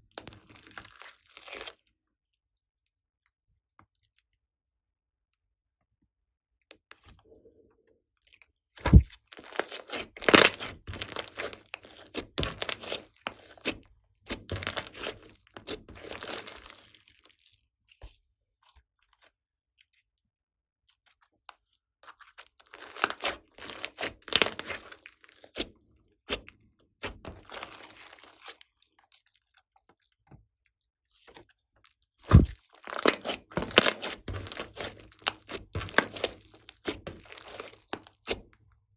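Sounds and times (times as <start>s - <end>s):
slime crackling and popping: 0.2s - 1.7s, 8.8s - 17.2s, 22.6s - 25.7s, 27.3s - 28.6s, 32.3s - 38.4s.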